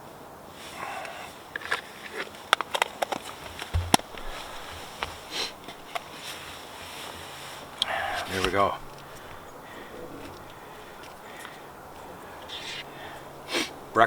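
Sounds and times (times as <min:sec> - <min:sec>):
dull thump: 0:03.4 - 0:06.0
person sniffing: 0:12.5 - 0:13.8.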